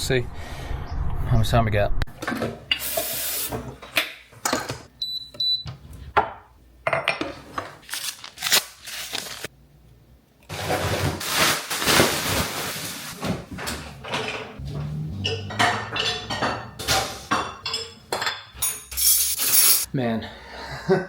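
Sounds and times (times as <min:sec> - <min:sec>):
dishes and silverware clinking: 0:06.2 - 0:07.8, 0:14.0 - 0:19.9.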